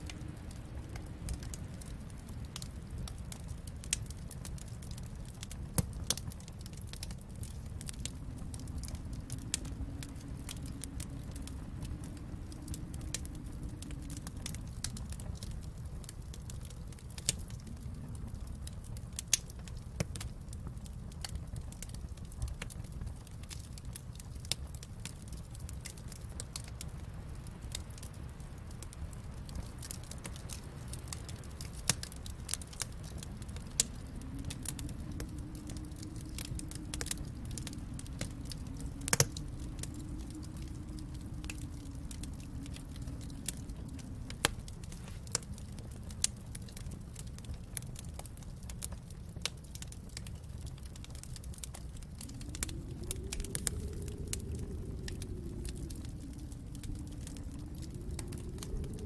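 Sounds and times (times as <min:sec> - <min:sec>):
wood fire crackling and popping: 0:00.0 - 0:59.0
low hum: 0:33.0 - 0:45.6, 0:51.6 - 0:59.0.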